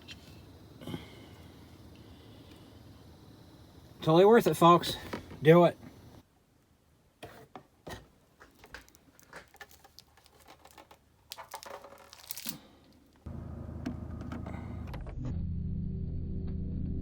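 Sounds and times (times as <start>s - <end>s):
low hum with held tones: 0.0s - 7.2s.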